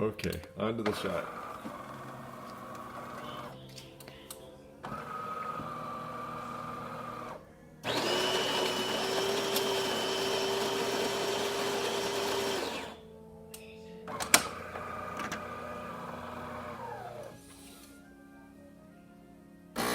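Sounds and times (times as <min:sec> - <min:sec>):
espresso machine motor running: 0:01.0 - 0:03.5, 0:04.9 - 0:13.0, 0:14.5 - 0:17.4
louder motor whirring: 0:04.9 - 0:13.0.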